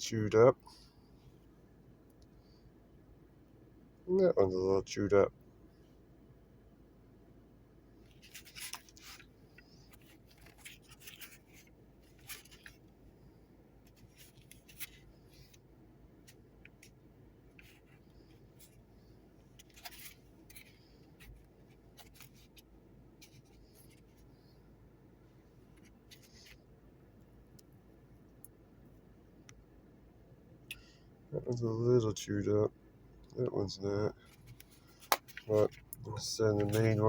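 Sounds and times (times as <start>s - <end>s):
plastic camcorder handling noise: 34.4s - 36.0s.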